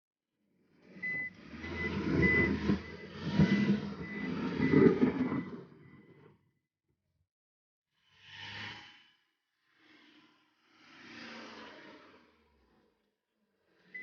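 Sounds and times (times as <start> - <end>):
plow scraping noise: 0.9 - 6.3
backhoe engine running: 1.0 - 5.2
reversing alarm beeping: 1.0 - 6.1.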